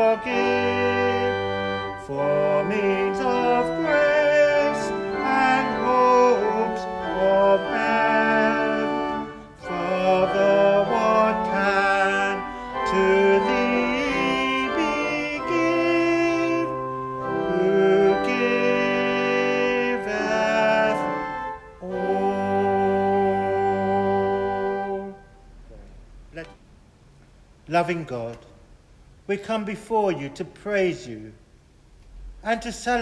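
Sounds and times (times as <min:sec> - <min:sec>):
voices singing a hymn: 0:00.0 - 0:25.3
organ: 0:00.0 - 0:25.6.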